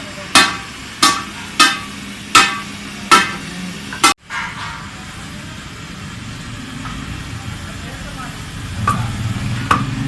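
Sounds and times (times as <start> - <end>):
steady background noise: 0.0 - 10.0
hammer striking metal: 0.2 - 5.0.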